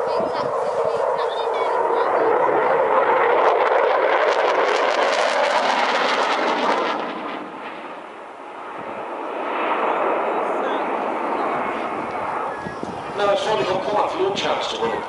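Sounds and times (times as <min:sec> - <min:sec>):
rapid jet crackle: 0:00.0 - 0:08.2
jet engines roaring: 0:00.0 - 0:15.0.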